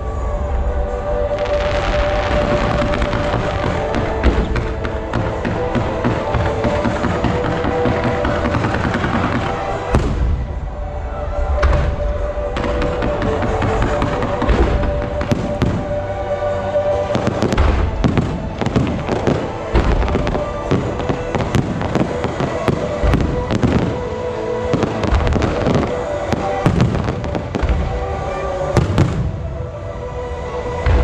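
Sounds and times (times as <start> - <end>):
steady music: 0.0 - 31.0
fireworks bangs and crackles: 1.2 - 29.7.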